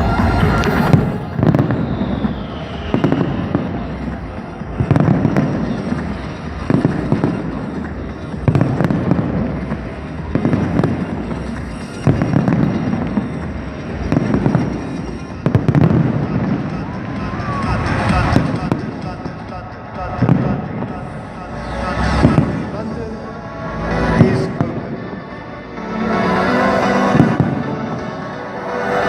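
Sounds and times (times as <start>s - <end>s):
fireworks crackling: 0.0s - 25.4s, 26.5s - 29.0s.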